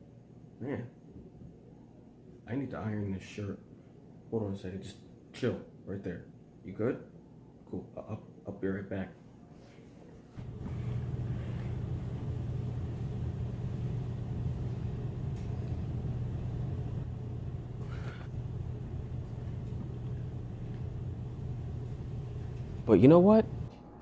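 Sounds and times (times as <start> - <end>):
steady low rumble: 10.4 - 24.0.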